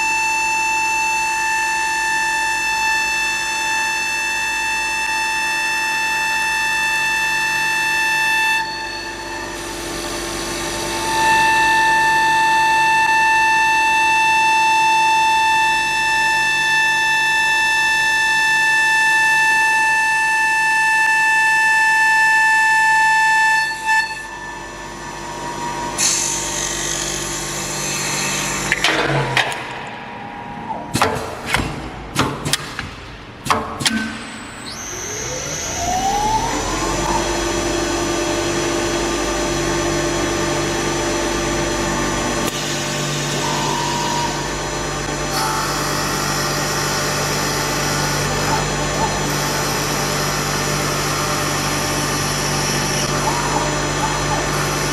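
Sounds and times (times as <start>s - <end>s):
mechanical clacks and knocks: 28.6s - 30.1s
wood lathe whining: 34.7s - 54.9s.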